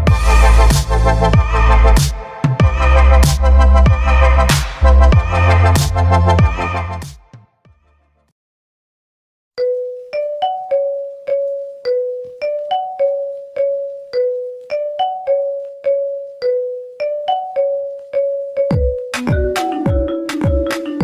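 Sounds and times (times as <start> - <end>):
phone ringtone melody: 9.6 - 21.0.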